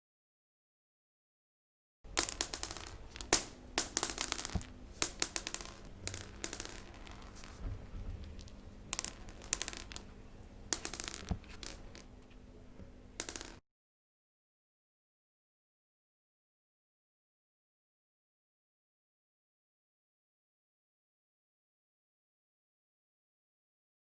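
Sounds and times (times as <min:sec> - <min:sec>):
beads scattering on hard surface: 0:02.1 - 0:13.6
faint steady hum: 0:02.1 - 0:13.6.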